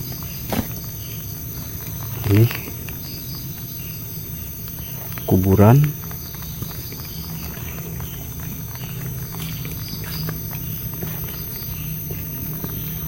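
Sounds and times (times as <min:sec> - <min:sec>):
footsteps rustling through undergrowth: 0:00.0 - 0:03.1, 0:06.2 - 0:13.0
insects chirring: 0:00.0 - 0:13.0.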